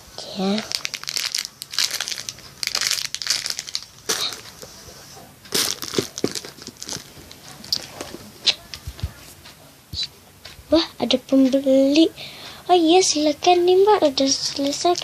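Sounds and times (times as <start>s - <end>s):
crinkling and rustling: 0.2s - 9.6s, 14.2s - 15.0s.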